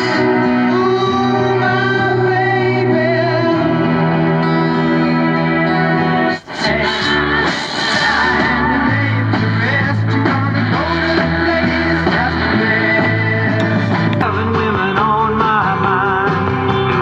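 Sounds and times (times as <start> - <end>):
rock song on radio loudspeaker: 0.0 - 17.0.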